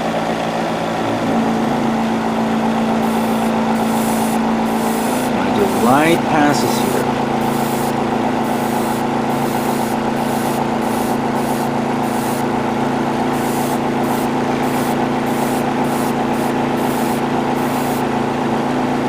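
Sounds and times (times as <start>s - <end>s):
airbrush compressor humming: 1.0s - 18.2s
airbrush spraying hiss: 3.0s - 5.8s, 7.4s - 12.4s, 13.4s - 18.0s.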